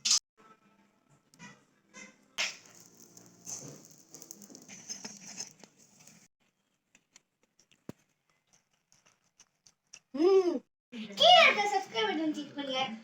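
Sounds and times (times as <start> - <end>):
miniature utensils scraping and tapping: 2.4 - 6.3.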